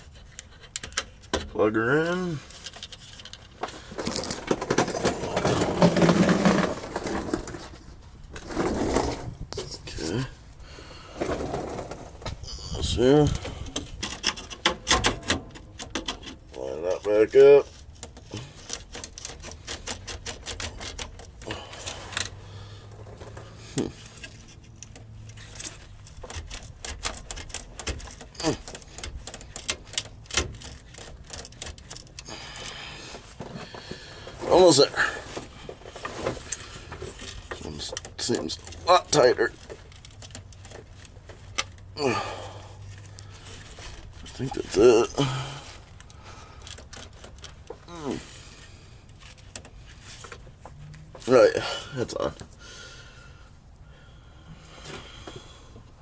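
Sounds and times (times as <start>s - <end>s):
plastic parts clicking: 17.9s - 22.4s, 23.2s - 32.8s, 36.5s - 41.9s, 45.9s - 47.9s.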